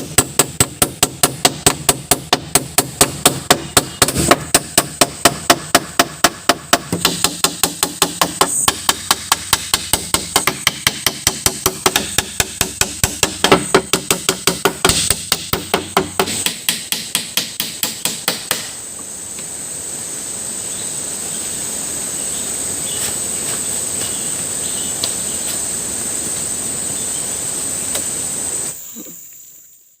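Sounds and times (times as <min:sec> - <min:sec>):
rapid even hammering: 0:00.0 - 0:18.8
high-pitched insect drone: 0:18.5 - 0:30.0.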